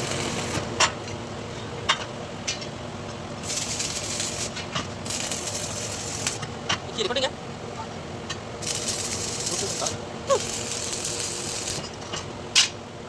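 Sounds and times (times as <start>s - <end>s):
hissing arc crackle: 0.0s - 0.8s, 3.4s - 6.4s, 8.6s - 12.0s
welding machine hum: 0.0s - 1.0s, 3.3s - 7.2s, 8.6s - 12.2s.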